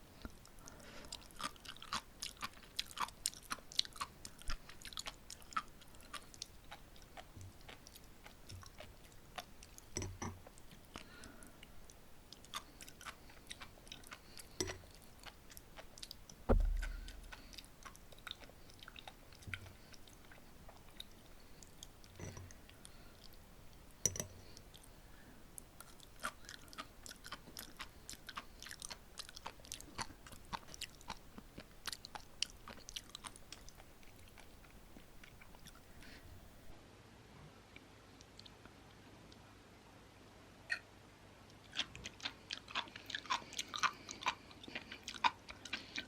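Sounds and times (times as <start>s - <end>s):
chewing crisp pops: 12.4s - 22.4s
dull low thump: 16.5s - 17.4s.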